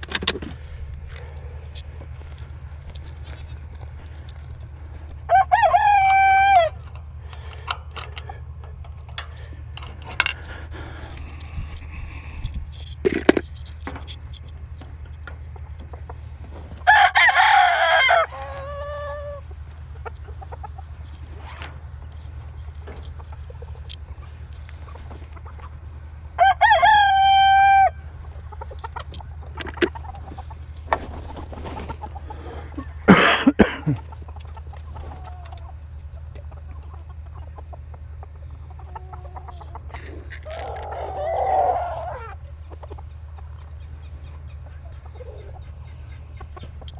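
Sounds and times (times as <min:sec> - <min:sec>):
chickens clucking: 0:00.0 - 0:46.9
steady low hum: 0:00.0 - 0:46.9
rooster crowing: 0:04.9 - 0:11.4, 0:16.7 - 0:19.6, 0:26.3 - 0:28.2, 0:38.8 - 0:42.5.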